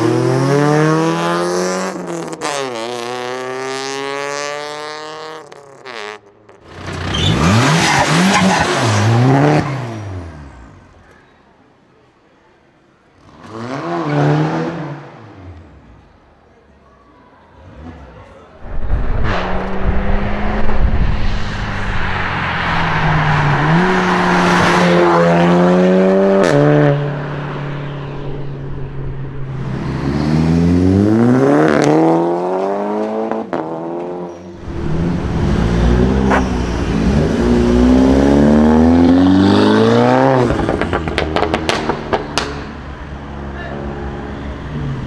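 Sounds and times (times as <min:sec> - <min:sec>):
car engine revving: 0:17.6 - 0:45.0.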